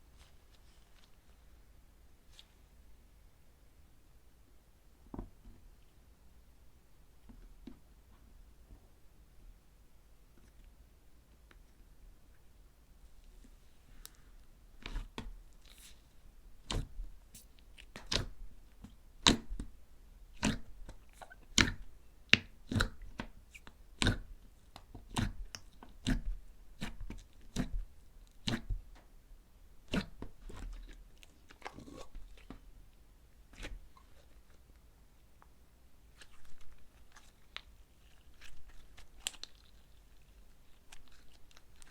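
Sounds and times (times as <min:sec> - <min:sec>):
dried clay crunching: 0:36.1 - 0:41.9.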